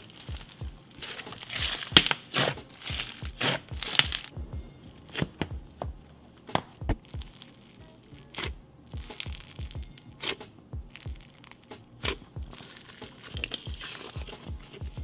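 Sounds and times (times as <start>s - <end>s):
slime squished by hand: 0.0s - 4.3s.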